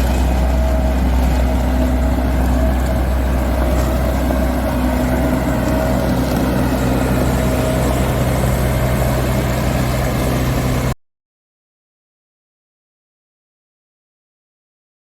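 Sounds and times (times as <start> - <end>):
diesel engine droning: 0.0 - 11.0.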